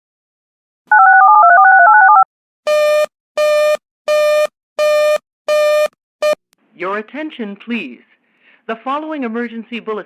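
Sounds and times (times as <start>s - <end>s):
touch-tone digits: 1.5s - 6.4s
buzzy beeps: 2.7s - 6.4s.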